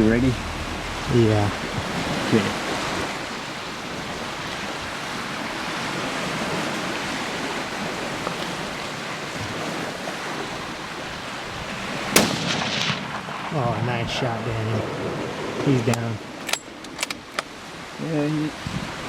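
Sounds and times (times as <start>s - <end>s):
surf: 0.0s - 16.4s
wind: 0.0s - 19.0s
rifle shot with echo: 12.1s - 13.8s.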